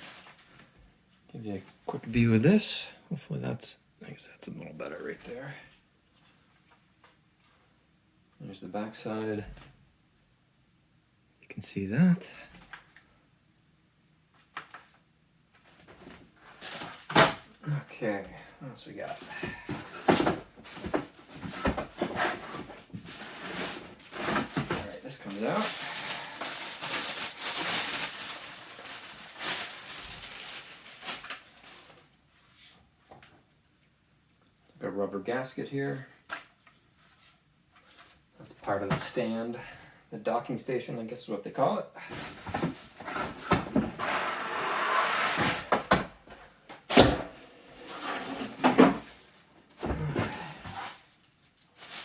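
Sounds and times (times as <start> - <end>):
packaging rustling and crinkling: 19.1 - 32.1, 42.1 - 44.2, 48.0 - 52.0.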